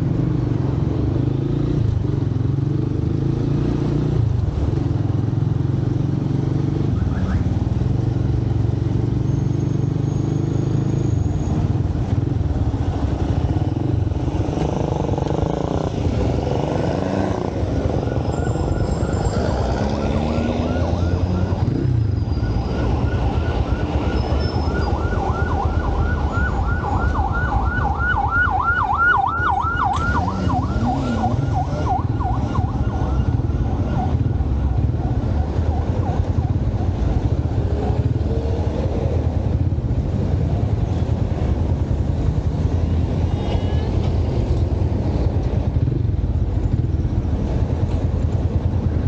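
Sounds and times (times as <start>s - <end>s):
road noise: 0.0s - 49.0s
siren yelping: 16.7s - 37.0s.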